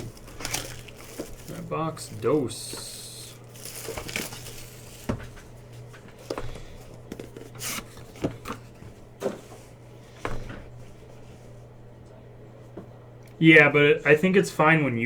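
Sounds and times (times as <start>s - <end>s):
low steady hum: 0.0s - 15.0s
cards sliding: 2.8s - 9.5s.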